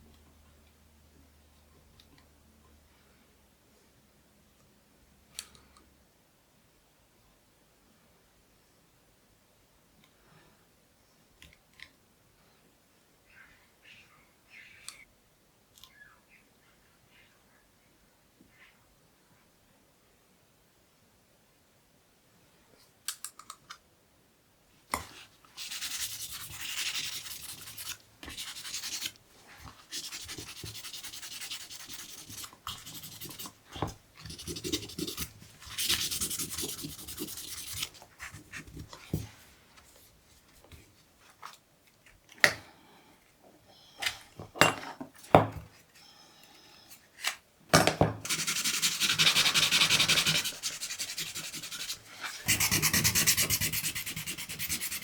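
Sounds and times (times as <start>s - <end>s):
hand sanding: 25.6s - 29.1s, 29.9s - 33.5s, 34.3s - 37.9s, 48.3s - 55.0s.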